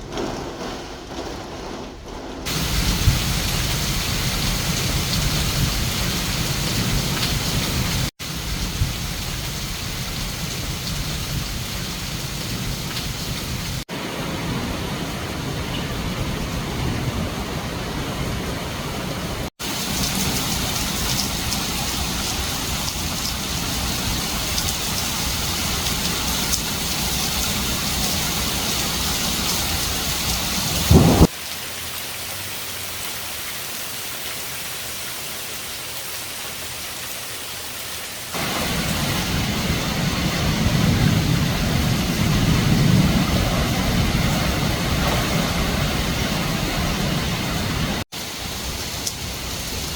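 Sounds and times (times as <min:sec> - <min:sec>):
steady rain hiss: 0:00.0 - 0:49.9
low rumble: 0:30.8 - 0:31.3
short loud burst: 0:30.9 - 0:31.3.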